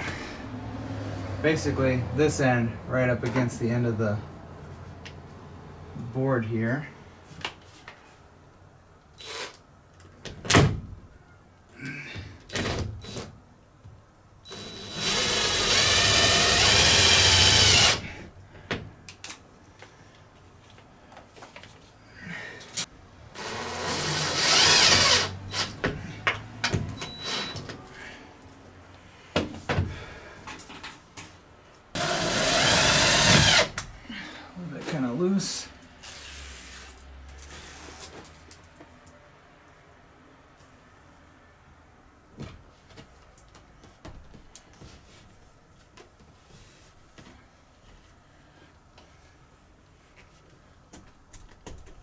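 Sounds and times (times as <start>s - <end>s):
power drill driving screws: 9.2s - 9.6s, 14.5s - 18.1s, 23.4s - 25.8s, 32.0s - 33.8s.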